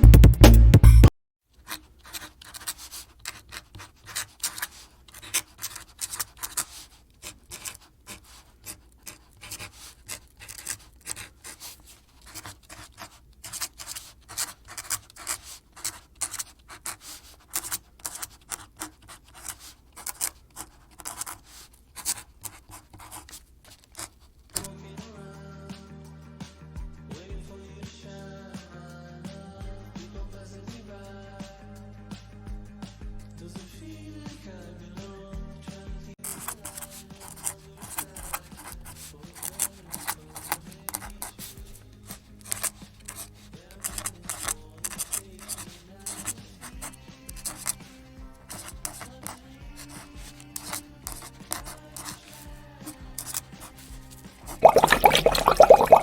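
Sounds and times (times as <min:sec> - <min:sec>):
loud music: 0:00.0 - 0:01.1
scratching and rubbing: 0:01.6 - 0:24.7, 0:36.2 - 0:54.7.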